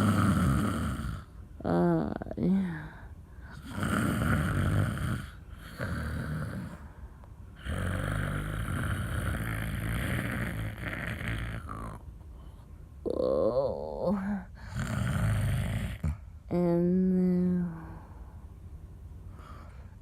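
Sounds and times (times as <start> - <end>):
woman snoring: 0.0 - 6.9, 7.6 - 12.0, 13.1 - 16.6.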